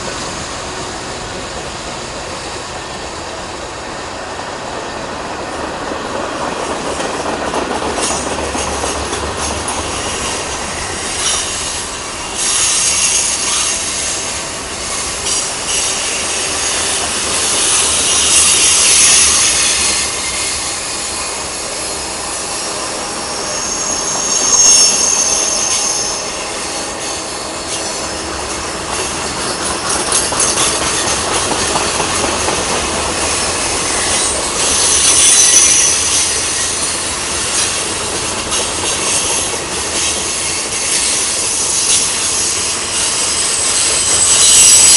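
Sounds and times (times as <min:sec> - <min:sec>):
freight train wheels rumbling: 0:00.0 - 0:44.9
high-pitched wheel squeals: 0:12.4 - 0:28.6, 0:33.4 - 0:37.9, 0:40.0 - 0:44.9.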